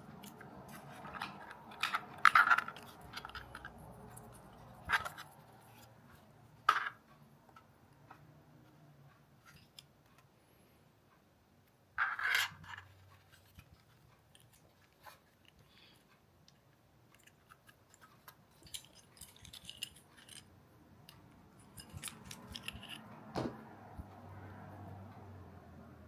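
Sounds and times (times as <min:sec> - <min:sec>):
sharp knock: 0:23.4 - 0:23.6.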